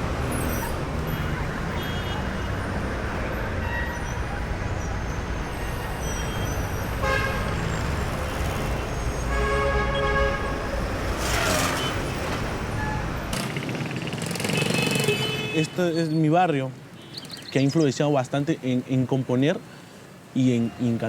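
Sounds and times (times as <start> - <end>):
street traffic rumbling: 0.0 - 21.0
vehicle horns honking: 6.0 - 7.8, 9.2 - 13.2, 14.4 - 16.0.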